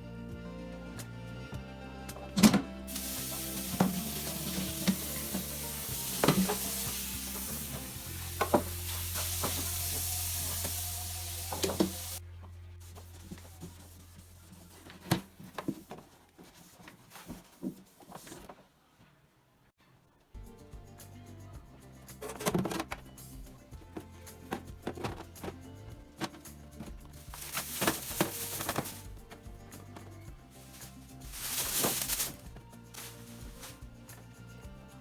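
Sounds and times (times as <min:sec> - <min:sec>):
steady hiss: 0:02.9 - 0:12.2, 0:30.6 - 0:33.8
knocks and clicks of handling: 0:23.9 - 0:30.1.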